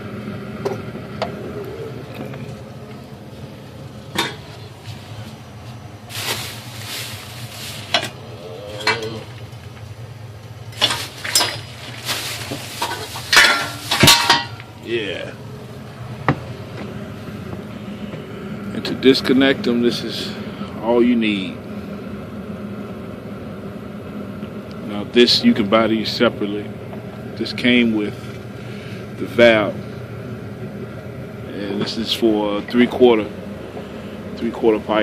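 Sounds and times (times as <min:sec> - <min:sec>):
low steady hum: 0:00.0 - 0:35.0
small objects rustling and clattering: 0:06.1 - 0:08.2, 0:10.8 - 0:14.5.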